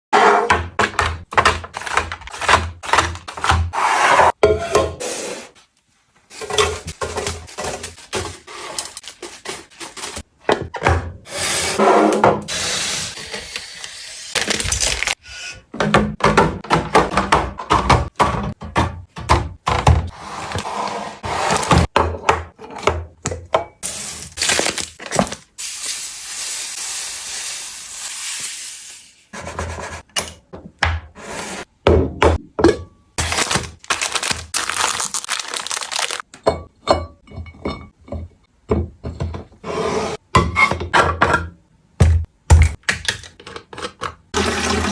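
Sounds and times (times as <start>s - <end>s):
food containers clacking and knocking: 0.4s - 3.7s, 6.3s - 11.2s, 14.4s - 20.2s, 31.8s - 39.6s, 40.4s - 44.9s
packaging handling noise: 6.9s - 10.2s, 13.2s - 15.2s, 23.9s - 25.6s, 33.2s - 36.2s.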